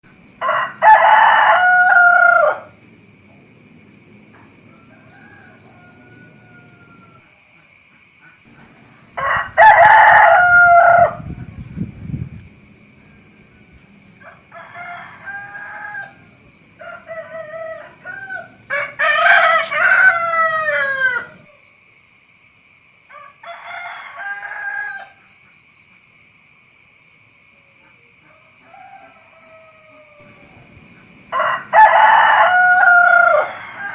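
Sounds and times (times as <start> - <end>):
rooster crowing: 0.2 - 2.8, 4.3 - 7.6, 9.0 - 11.4, 14.2 - 21.7, 23.0 - 25.4, 28.0 - 33.9.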